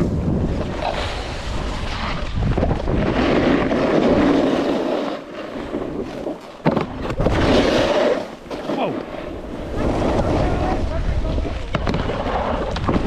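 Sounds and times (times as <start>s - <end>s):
wind buffeting microphone: 0.0s - 4.4s, 9.2s - 13.0s
snowboard scraping on snow: 0.0s - 13.0s.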